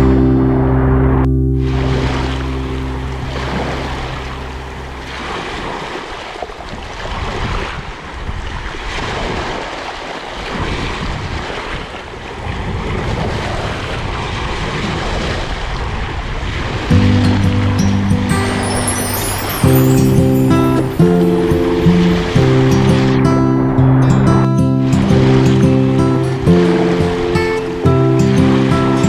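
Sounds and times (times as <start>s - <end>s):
sea waves washing in: 1.6s - 7.5s, 16.8s - 29.0s.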